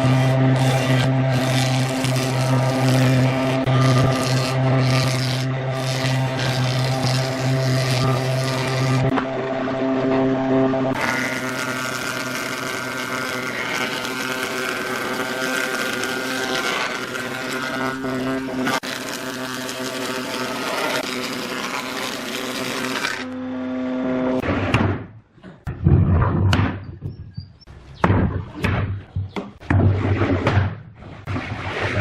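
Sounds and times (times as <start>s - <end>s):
power tool whining: 0.0s - 24.4s
knocks and thuds: 24.4s - 27.4s, 28.0s - 31.0s.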